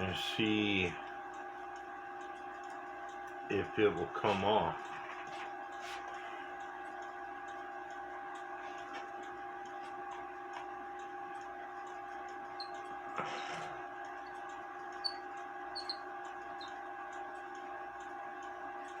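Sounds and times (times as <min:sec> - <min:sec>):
steady hum: 0:00.0 - 0:19.0
screws ticking and clicking: 0:06.6 - 0:13.2, 0:13.8 - 0:19.0
faint high squeaks: 0:15.0 - 0:16.0.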